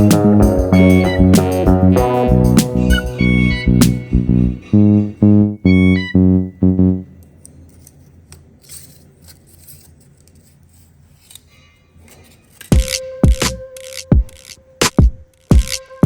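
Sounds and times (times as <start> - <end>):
plucked guitar and bass music: 0.0 - 7.1.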